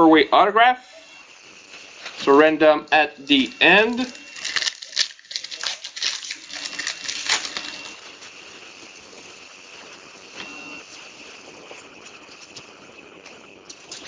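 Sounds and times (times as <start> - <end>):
card wrappers crinkling: 2.0 - 8.1.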